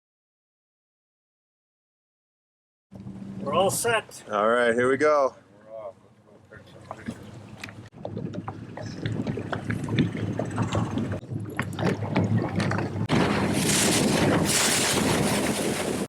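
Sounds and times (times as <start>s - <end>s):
water splashing against hull: 6.4s - 16.0s
wind rushing over microphone: 7.1s - 16.0s.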